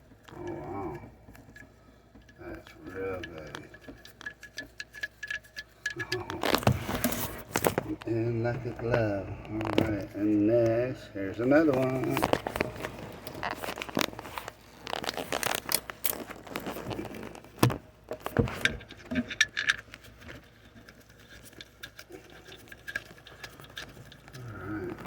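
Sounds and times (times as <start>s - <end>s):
wrench clicking and scraping on metal: 2.2s - 7.7s.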